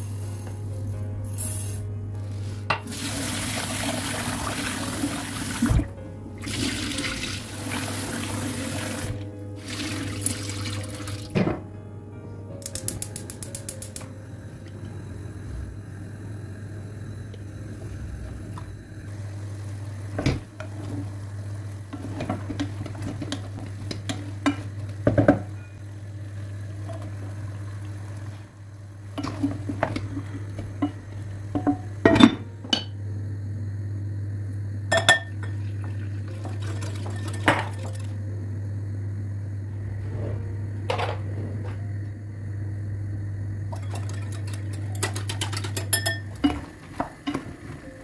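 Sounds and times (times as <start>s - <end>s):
steady low hum: 3.8s - 48.0s
dishes and cutlery clinking: 43.7s - 47.5s.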